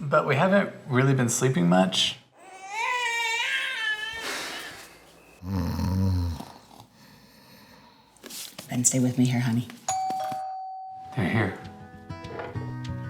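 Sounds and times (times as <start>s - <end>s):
person snoring: 5.4s - 7.9s.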